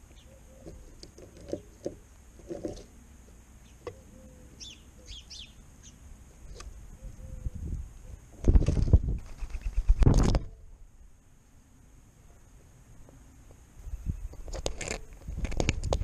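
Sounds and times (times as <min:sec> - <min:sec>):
sparrows chirping: 0:00.0 - 0:01.1, 0:03.6 - 0:08.2.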